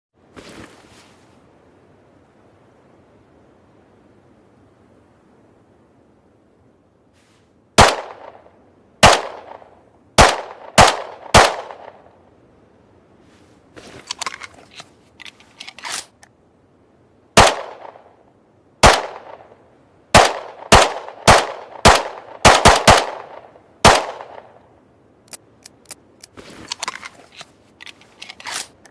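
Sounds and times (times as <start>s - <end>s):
pistol shots: 7.8s - 8.4s, 9.0s - 12.0s, 17.4s - 18.1s, 18.8s - 19.5s, 20.1s - 24.5s
gun clicks and rattles: 13.9s - 16.3s, 25.2s - 28.9s.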